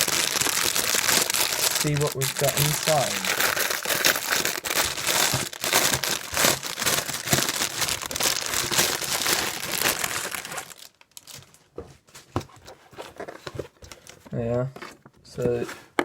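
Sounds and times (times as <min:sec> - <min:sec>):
plastic bag crinkling: 0:00.0 - 0:11.6.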